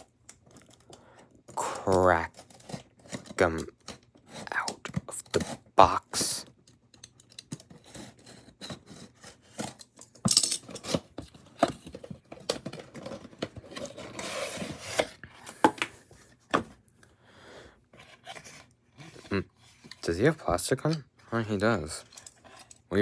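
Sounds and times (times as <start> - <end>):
cardboard rustling and tearing: 1.6 - 6.4, 10.7 - 15.2
cardboard packaging clicks and knocks: 7.4 - 16.8.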